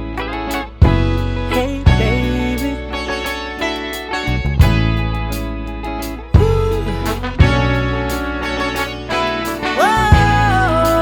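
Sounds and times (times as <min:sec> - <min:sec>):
guitar music with steady beat: 0:00.0 - 0:11.0
person singing ooh: 0:06.4 - 0:07.2, 0:09.8 - 0:11.0.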